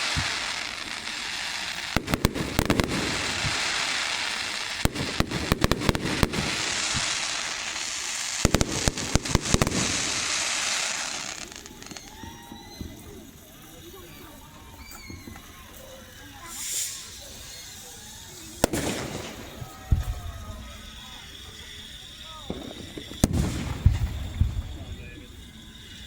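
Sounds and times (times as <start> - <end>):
fireworks rapid sharp bangs: 0.0 - 13.5, 18.1 - 26.0
steady hiss: 0.0 - 26.0.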